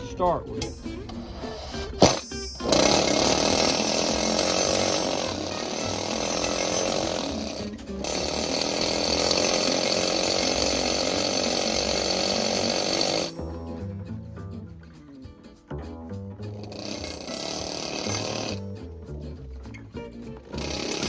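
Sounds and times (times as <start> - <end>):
needle scaler hammering metal: 0.0 - 13.4, 16.6 - 18.6, 20.4 - 21.0.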